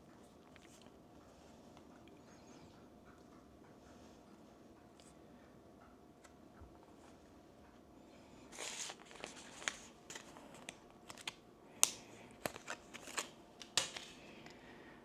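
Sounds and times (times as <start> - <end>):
rustling packaging: 8.5 - 14.2.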